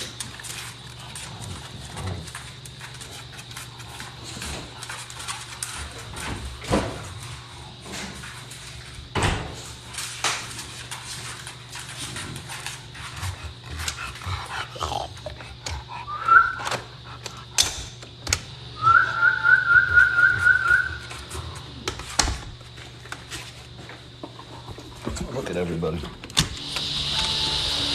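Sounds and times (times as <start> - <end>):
dog whining: 18.8 - 21.1.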